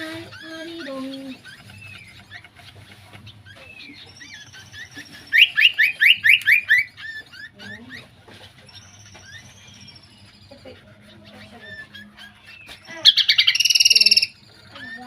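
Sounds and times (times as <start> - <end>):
songbird whistling: 3.4 - 8.0, 8.6 - 10.6, 11.3 - 15.0.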